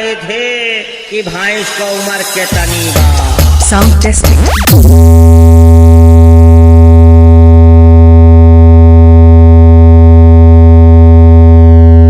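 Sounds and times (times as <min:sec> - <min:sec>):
synthesizer bass drone: 0:02.5 - 0:12.0.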